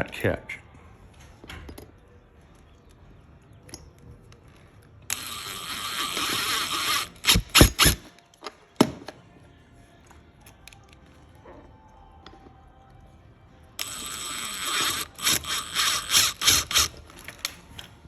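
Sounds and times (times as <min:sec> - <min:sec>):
cordless drill driving screw: 0:05.1 - 0:08.1, 0:13.8 - 0:17.6.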